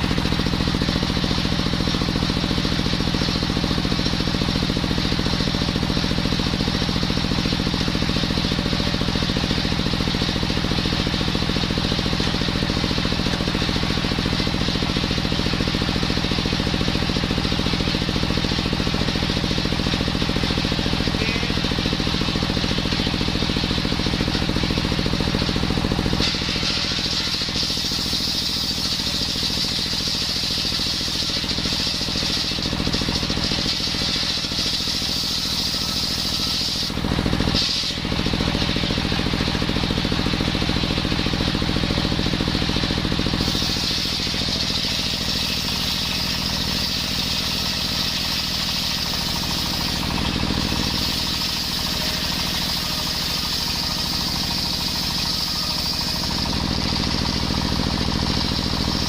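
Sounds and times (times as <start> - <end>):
saw blade whining through wood: 0.0 - 59.0
small saw engine running: 0.0 - 59.0.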